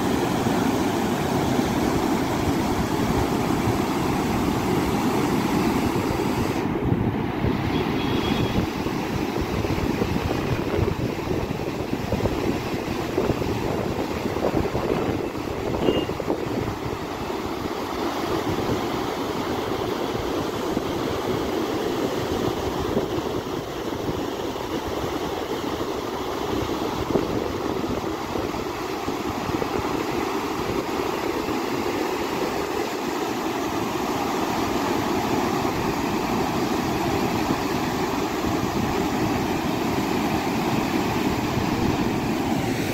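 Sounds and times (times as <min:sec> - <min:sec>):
water rushing: 0:00.0 - 0:42.9.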